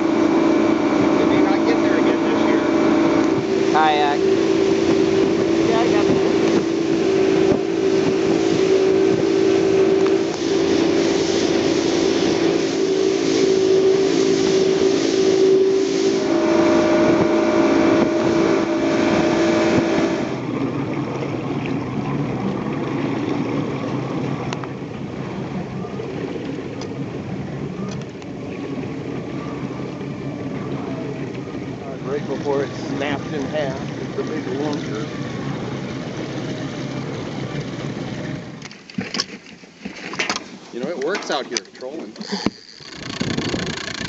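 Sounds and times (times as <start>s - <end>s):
water hiss: 0.0s - 20.5s
boat motor running: 0.0s - 44.0s
wind: 0.0s - 44.0s.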